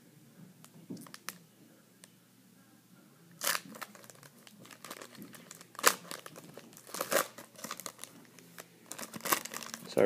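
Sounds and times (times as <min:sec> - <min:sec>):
foil wrapper crinkling and tearing: 0:03.4 - 0:10.0.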